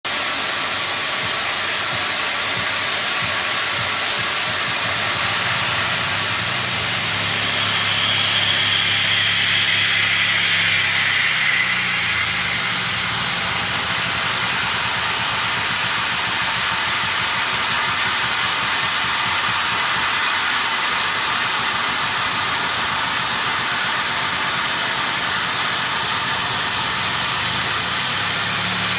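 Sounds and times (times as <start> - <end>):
high whine: 0.1 - 17.7
cnc machine cutting hiss: 0.1 - 28.9
low hum: 2.6 - 16.4.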